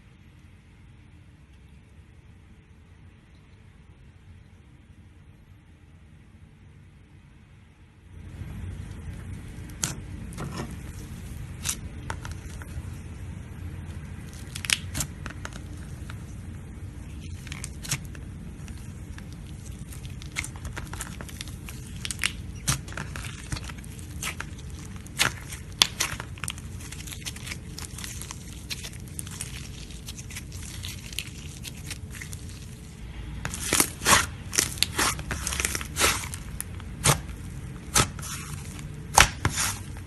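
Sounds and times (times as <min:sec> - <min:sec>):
low steady rumble: 0:00.0 - 0:40.0
slime crackling and popping: 0:08.4 - 0:40.0.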